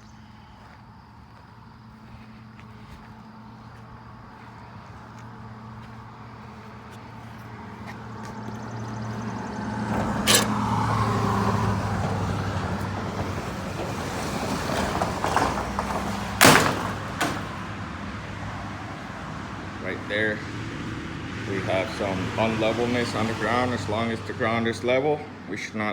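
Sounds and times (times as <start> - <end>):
metal garage door rattling: 9.8 - 18.4
sharp metal clanks: 9.9 - 10.8.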